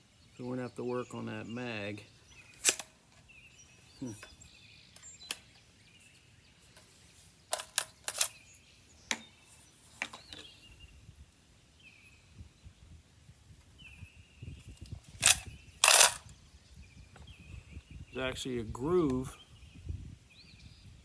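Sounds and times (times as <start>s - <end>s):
metallic rifle clicks: 2.5s - 2.9s, 7.5s - 8.4s, 15.2s - 16.2s.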